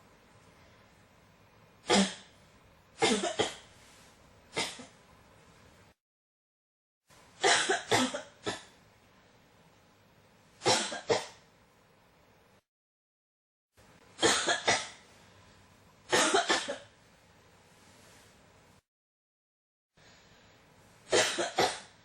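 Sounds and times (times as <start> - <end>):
person coughing: 1.9 - 2.3, 3.0 - 3.7, 4.6 - 5.0, 7.4 - 8.7, 10.7 - 11.4, 14.2 - 15.0, 16.1 - 16.9, 21.1 - 22.0.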